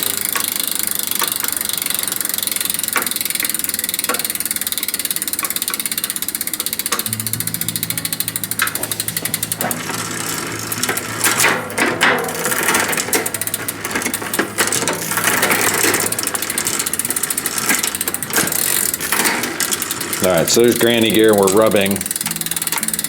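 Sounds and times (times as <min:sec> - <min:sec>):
chain rubbing on derailleur: 0:00.0 - 0:07.2, 0:12.3 - 0:23.0
bicycle chain clicking and rattling: 0:00.0 - 0:23.0.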